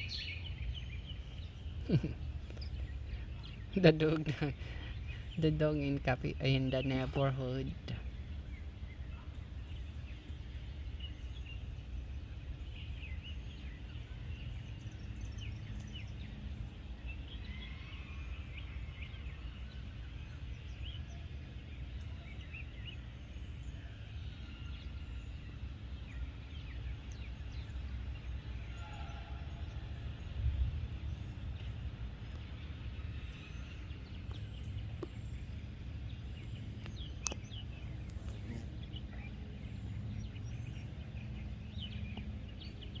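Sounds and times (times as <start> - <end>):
bird chirps: 0.0 - 11.7, 31.0 - 43.0
low background rumble: 0.0 - 43.0.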